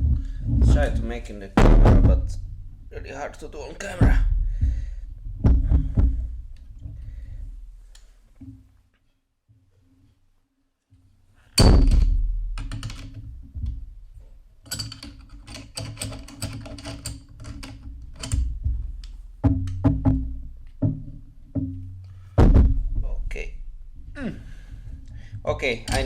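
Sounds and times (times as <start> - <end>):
loud metal knock: 1.6 - 2.6, 11.6 - 13.9, 18.2 - 23.7
metal parts knocking and clicking: 11.6 - 13.8, 14.6 - 20.0, 25.7 - 26.0.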